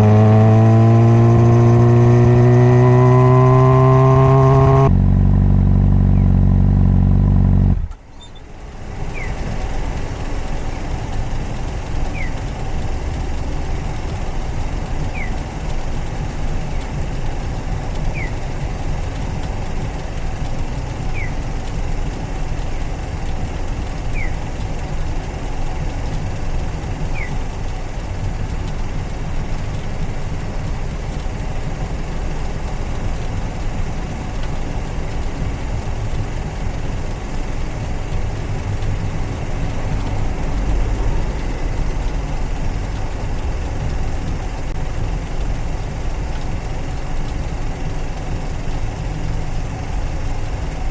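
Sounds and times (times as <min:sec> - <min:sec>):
motorcycle engine running: 0:00.0 - 0:50.9
faint short chirp: 0:08.0 - 0:08.5.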